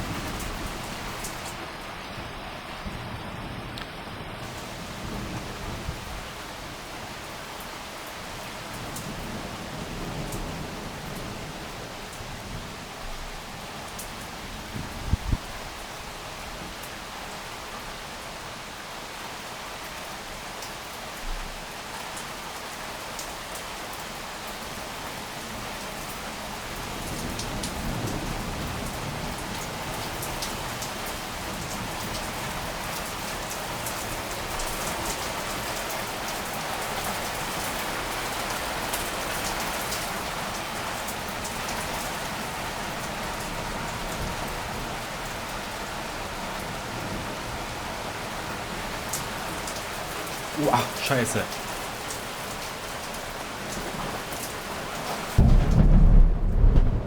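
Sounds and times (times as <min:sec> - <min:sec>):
heavy rain pouring: 0:00.0 - 0:57.0
raindrops ticking close by: 0:19.6 - 0:57.0
low rumble of thunder: 0:55.3 - 0:57.0.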